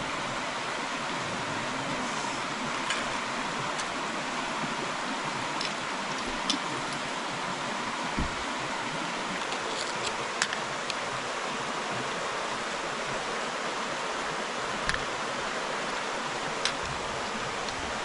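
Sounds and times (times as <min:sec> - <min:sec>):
river water flowing: 0:00.0 - 0:18.0.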